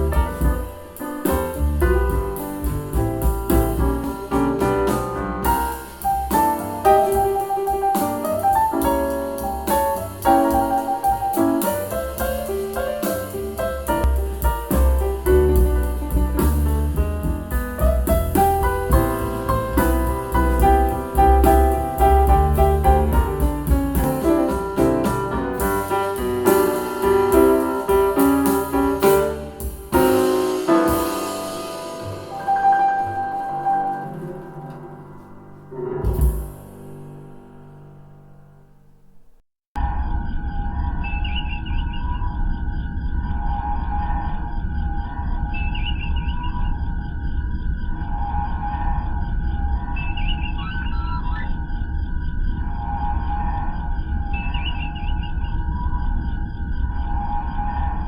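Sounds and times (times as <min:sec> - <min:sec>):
steady low bass: 0:00.0 - 0:33.2
jazz piano melody: 0:00.0 - 0:39.4.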